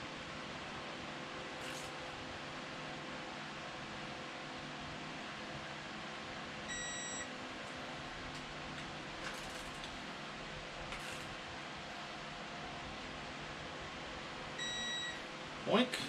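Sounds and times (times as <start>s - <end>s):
electronic beep: 6.7s - 7.2s, 14.6s - 15.2s.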